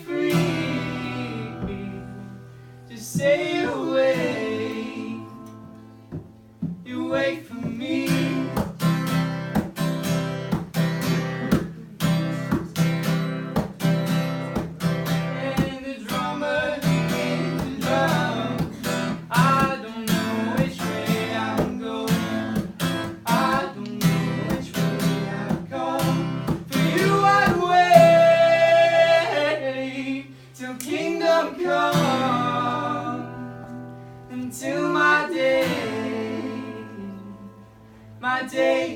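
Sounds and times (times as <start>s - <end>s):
acoustic guitar strumming: 0.0s - 38.9s
person singing: 15.1s - 37.6s.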